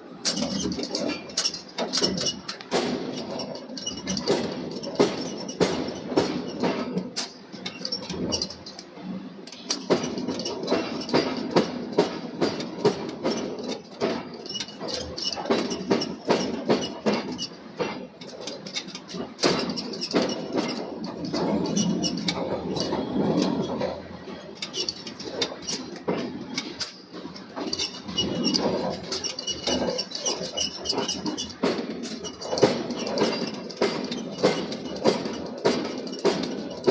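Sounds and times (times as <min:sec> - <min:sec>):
metal knocks and clanks: 0:09.5 - 0:36.9.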